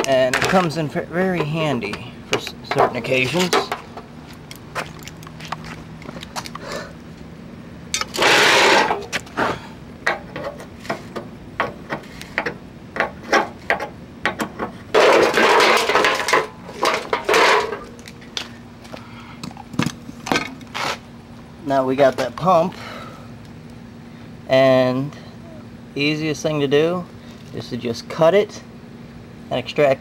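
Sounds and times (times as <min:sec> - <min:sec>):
metal clicks and knocks: 0:00.0 - 0:06.6, 0:10.0 - 0:18.1.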